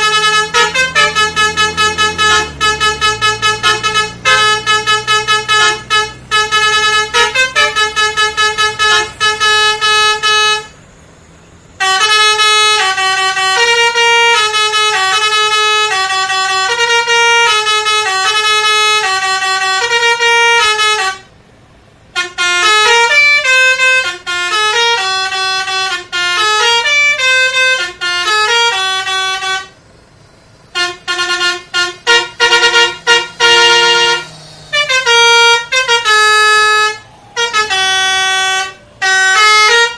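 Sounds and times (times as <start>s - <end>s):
faint engine hum: 0.0s - 39.9s
multi-tone bus horn melodies: 0.0s - 39.9s.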